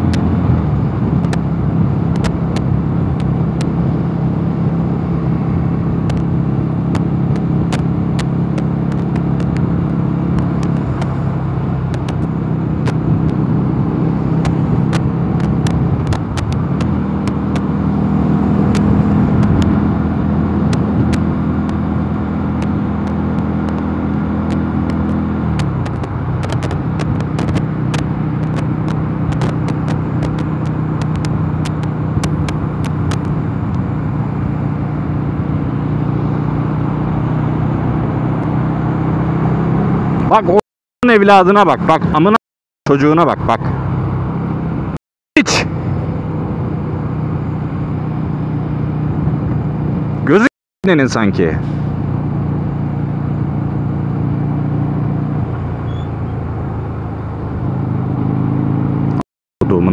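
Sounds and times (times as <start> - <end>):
motorcycle engine running: 0.0 - 39.9
sharp clicks: 22.6 - 33.8.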